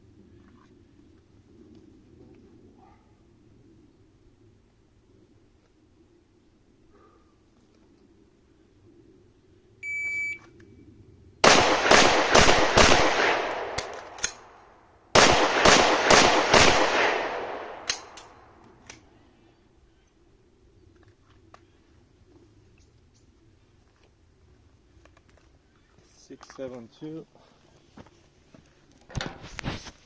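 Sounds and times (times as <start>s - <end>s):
shot timer beep: 9.8s - 10.4s
pistol shots: 11.4s - 18.4s.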